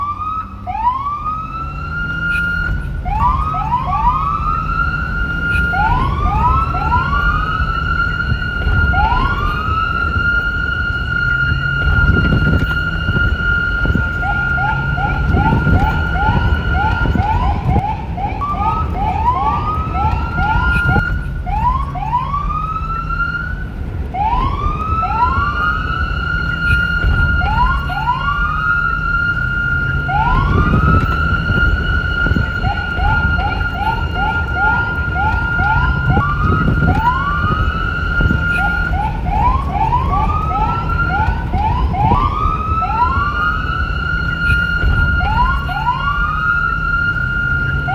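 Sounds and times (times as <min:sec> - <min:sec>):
low rumble: 0:00.0 - 0:47.9
police siren yelping and sweeping: 0:00.0 - 0:47.9.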